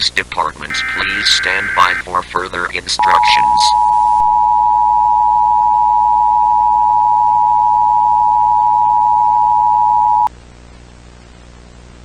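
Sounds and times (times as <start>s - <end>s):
loud steady electronic tone: 0.7s - 2.0s
faint hiss and hum: 0.7s - 2.1s.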